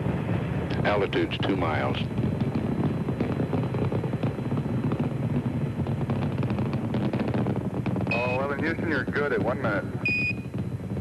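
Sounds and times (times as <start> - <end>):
rocket engines rumbling and crackling: 0.0 - 11.0.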